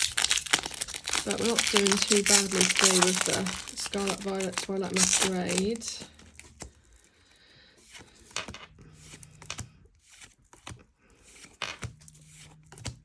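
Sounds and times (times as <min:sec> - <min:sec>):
trading cards being flicked through: 0:00.0 - 0:06.8
packaging rustling: 0:00.0 - 0:07.1.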